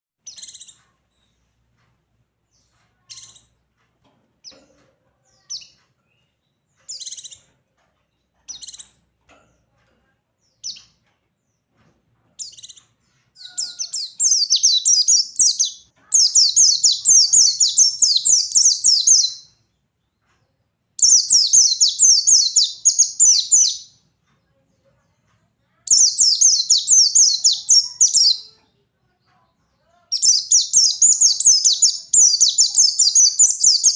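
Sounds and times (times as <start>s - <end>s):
bird twittering song: 0.2s - 1.4s, 5.4s - 7.5s, 8.2s - 9.0s, 12.4s - 20.2s, 21.0s - 24.0s, 25.9s - 28.6s, 30.1s - 33.9s
bird chirping: 0.2s - 1.6s, 2.4s - 3.6s, 4.4s - 9.1s, 10.4s - 25.2s, 25.8s - 28.8s, 29.8s - 33.9s.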